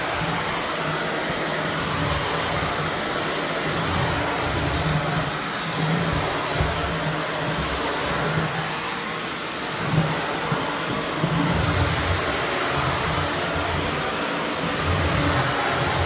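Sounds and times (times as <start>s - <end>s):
vacuum cleaner running: 0.0s - 16.0s
vacuum sucking up debris: 0.0s - 16.0s.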